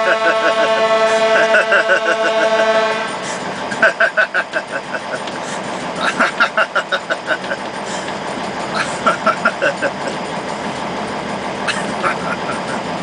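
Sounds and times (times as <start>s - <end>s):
truck air horn blasts: 0.0s - 3.5s.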